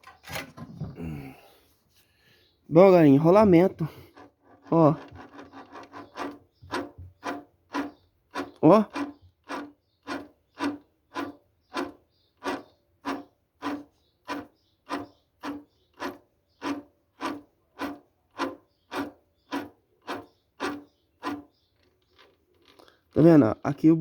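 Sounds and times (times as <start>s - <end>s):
rhythmic rasping scrapes with ringing: 3.2s - 21.6s.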